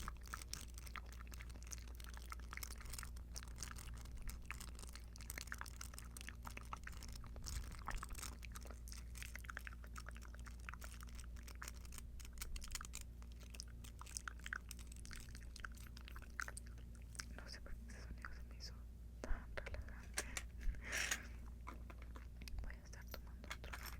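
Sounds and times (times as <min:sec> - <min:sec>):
earrings clicking: 0:20.1 - 0:22.2.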